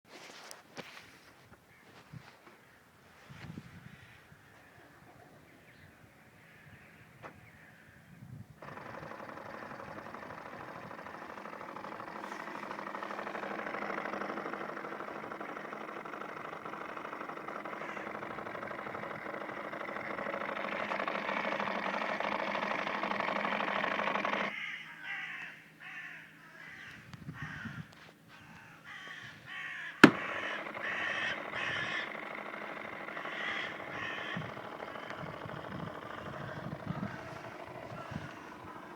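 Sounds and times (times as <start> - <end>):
harsh electrical buzzing: 30.0 - 38.8.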